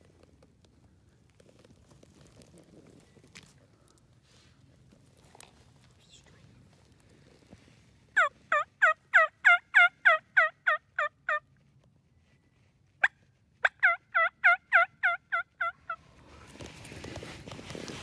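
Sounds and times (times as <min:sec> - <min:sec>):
turkey call yelps: 0:08.2 - 0:11.4, 0:13.0 - 0:16.0.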